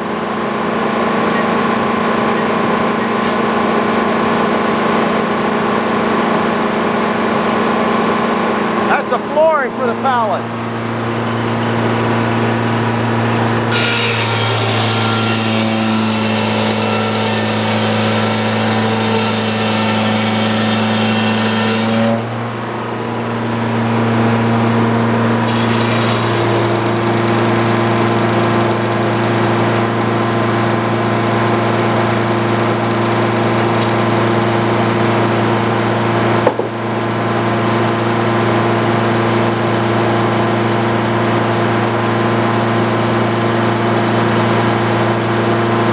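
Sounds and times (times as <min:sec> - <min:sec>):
sawmill engine running: 0:00.0 - 0:45.9
saw blade cutting log: 0:00.6 - 0:05.0, 0:13.7 - 0:22.3, 0:25.3 - 0:36.8
short knock: 0:36.4 - 0:36.8.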